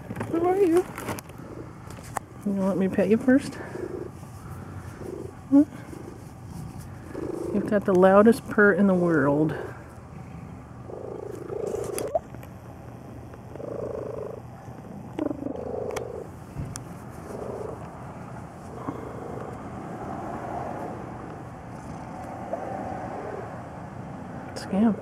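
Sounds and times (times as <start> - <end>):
cat purring loudly: 1.4 - 1.8, 3.4 - 4.2, 4.8 - 7.8, 9.4 - 12.3, 13.5 - 16.4, 17.2 - 24.2.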